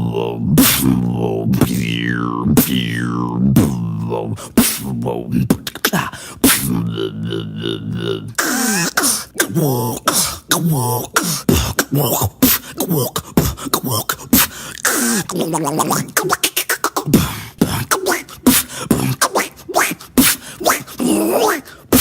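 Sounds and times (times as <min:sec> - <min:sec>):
warbling voice sounds: 0:00.0 - 0:05.9, 0:14.8 - 0:22.0
beatboxing mouth clicks and pops: 0:00.5 - 0:06.9, 0:07.8 - 0:22.0
hissing mouth noise: 0:08.3 - 0:22.0.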